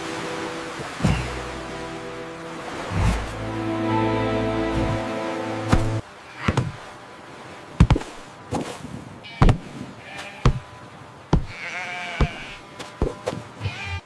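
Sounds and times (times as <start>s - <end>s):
sharp irregular knocks: 11.3s - 11.6s
cartoon sheep bleating: 13.6s - 14.0s.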